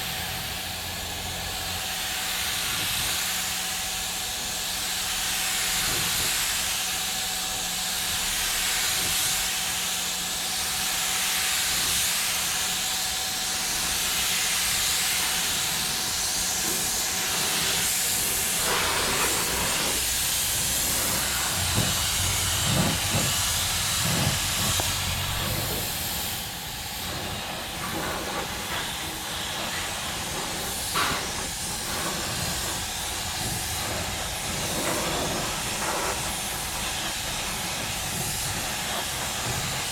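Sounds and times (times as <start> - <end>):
spray gun hissing: 0.1 - 39.9.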